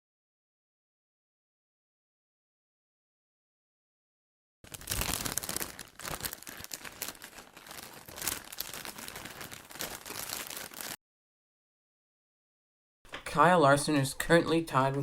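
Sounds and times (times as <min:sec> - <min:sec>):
foil wrapper tearing and crinkling: 0:04.7 - 0:11.0.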